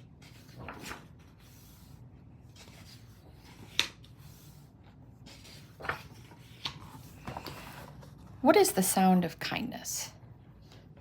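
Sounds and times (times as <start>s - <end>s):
paper rustling: 0.0s - 8.3s.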